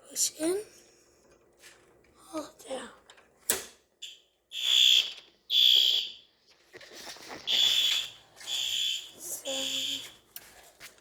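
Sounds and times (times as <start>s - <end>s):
fire alarm beeping: 4.0s - 6.3s, 7.5s - 10.2s.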